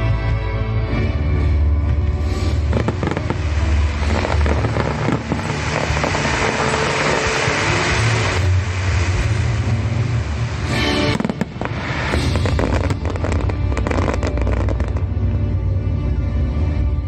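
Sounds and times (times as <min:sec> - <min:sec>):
continuous low rumble: 0:00.0 - 0:17.0
fireworks cracks and bursts: 0:02.2 - 0:15.1
crackling hiss: 0:02.2 - 0:15.2.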